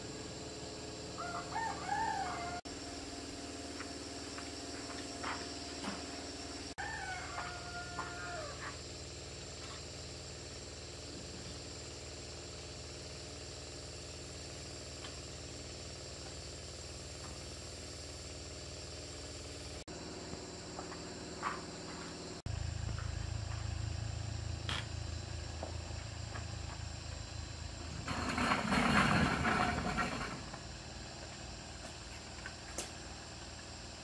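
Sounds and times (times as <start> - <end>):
rooster crowing: 1.2 - 2.7, 6.8 - 8.8
steady low hum: 8.0 - 28.2.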